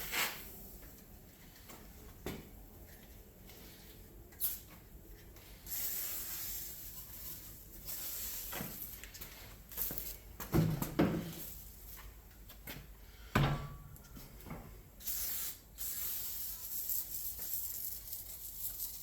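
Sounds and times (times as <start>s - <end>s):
aerosol can spraying: 15.0s - 19.0s.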